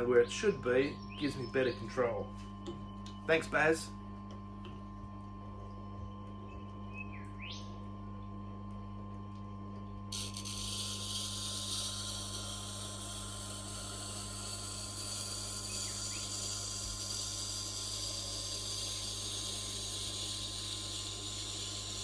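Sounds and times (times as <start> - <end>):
motor hum: 0.0 - 22.0
knife grinding on stone: 10.1 - 22.0.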